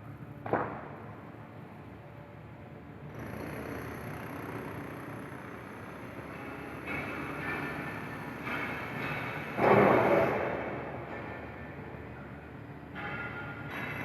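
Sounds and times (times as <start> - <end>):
construction machinery noise: 3.0 - 14.0.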